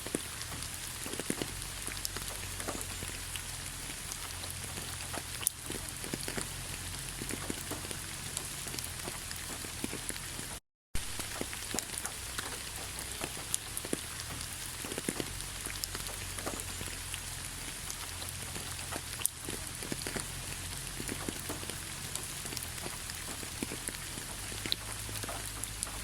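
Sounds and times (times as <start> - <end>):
raindrops ticking sharply: 0.0 - 26.0
steady rain falling: 0.0 - 26.0.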